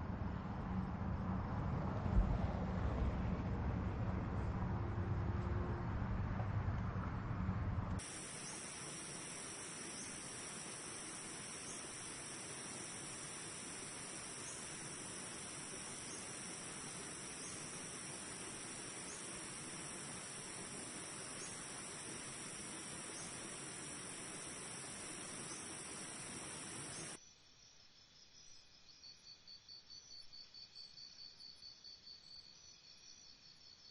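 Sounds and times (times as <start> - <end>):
low rumbling ambience: 0.0 - 27.2
high-pitched hiss: 8.0 - 27.8
crickets chirping: 8.0 - 33.9.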